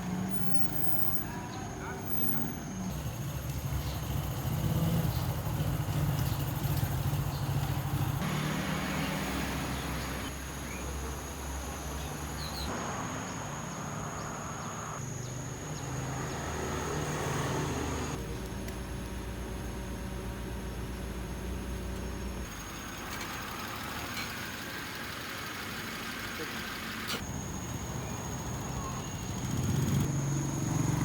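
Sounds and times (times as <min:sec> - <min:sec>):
faint insect chirps: 0:27.2 - 0:31.0.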